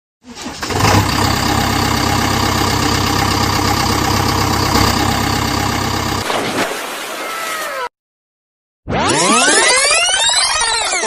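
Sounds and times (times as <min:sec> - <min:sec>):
engine idling: 0:00.6 - 0:06.3.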